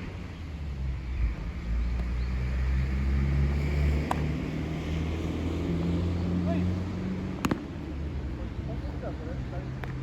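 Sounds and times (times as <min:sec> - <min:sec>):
sharp crack of baseball: 0:04.0 - 0:04.3, 0:07.4 - 0:07.8.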